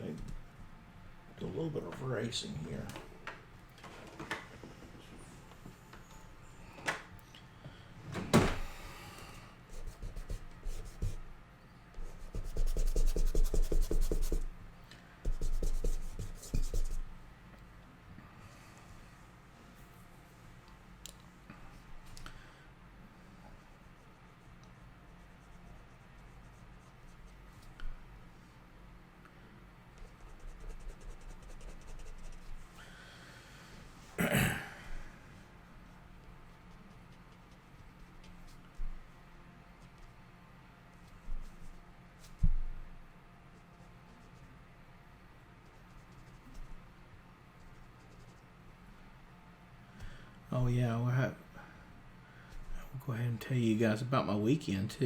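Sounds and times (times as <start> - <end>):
eraser rubbing on paper: 9.7 - 11.2, 12.0 - 14.5, 15.3 - 17.1, 30.0 - 32.6.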